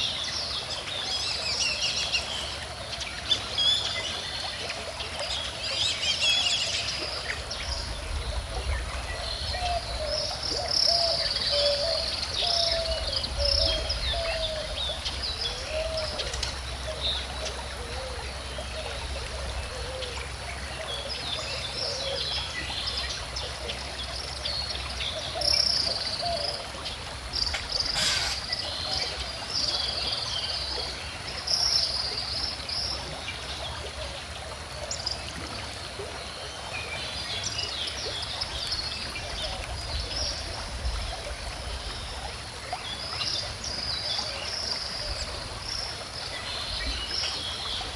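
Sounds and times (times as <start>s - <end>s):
gentle stream trickling: 0.0s - 47.9s
birds chirping and singing: 27.4s - 28.7s.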